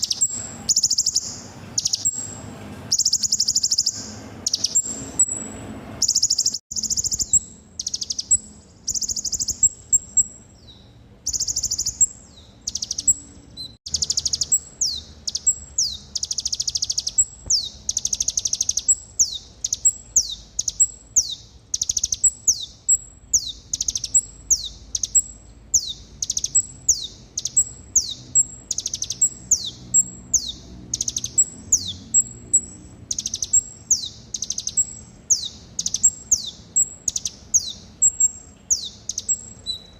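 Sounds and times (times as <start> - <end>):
sharp falling chirps: 0.0 - 10.4
sunbird buzzy trills: 0.0 - 39.9.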